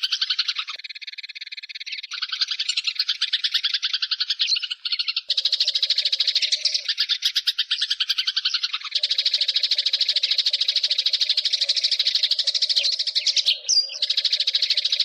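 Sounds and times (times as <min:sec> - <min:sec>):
sparrows chattering: 0:00.0 - 0:15.0.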